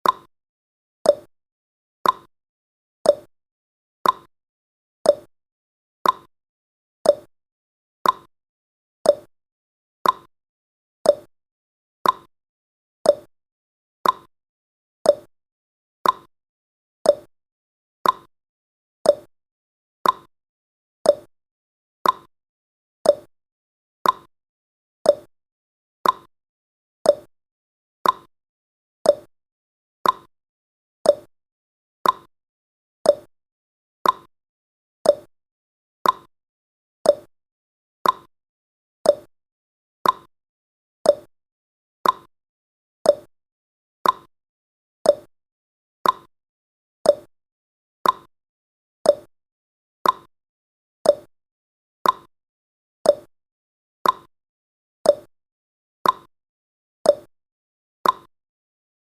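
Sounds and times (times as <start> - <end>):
timer ticking: 0.0 - 0.3, 1.1 - 1.3, 2.0 - 2.3, 3.1 - 3.3, 4.0 - 4.3, 5.1 - 5.3, 6.0 - 6.3, 7.1 - 7.3, 8.0 - 8.3, 9.1 - 9.3, 10.0 - 10.3, 11.1 - 11.3, 12.0 - 12.3, 13.1 - 13.3, 14.0 - 14.3, 15.1 - 15.3, 16.0 - 16.3, 17.1 - 17.3, 18.0 - 18.3, 19.1 - 19.3, 20.0 - 20.3, 21.1 - 21.3, 22.0 - 22.3, 23.0 - 23.3, 24.0 - 24.3, 25.1 - 25.3, 26.0 - 26.3, 27.1 - 27.3, 28.0 - 28.3, 29.1 - 29.3, 30.0 - 30.3, 31.1 - 31.3, 32.0 - 32.3, 33.1 - 33.3, 34.0 - 34.3, 35.0 - 35.3, 36.0 - 36.3, 37.1 - 37.3, 38.0 - 38.3, 39.1 - 39.3, 40.0 - 40.3, 41.1 - 41.3, 42.0 - 42.3, 43.1 - 43.3, 44.0 - 44.3, 45.1 - 45.3, 46.0 - 46.3, 47.1 - 47.3, 48.0 - 48.3, 49.1 - 49.3, 50.0 - 50.3, 51.1 - 51.3, 52.0 - 52.3, 53.1 - 53.3, 54.0 - 54.3, 55.1 - 55.3, 56.0 - 56.3, 57.1 - 57.3, 58.0 - 58.3.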